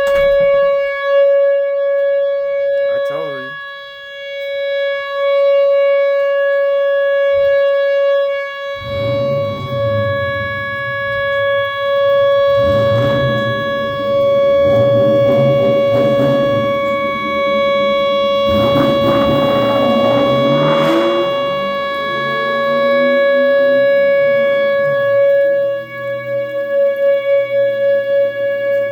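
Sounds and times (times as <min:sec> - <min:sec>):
tornado warning siren: 0:00.0 - 0:28.9
low rumbling noise: 0:08.6 - 0:28.9.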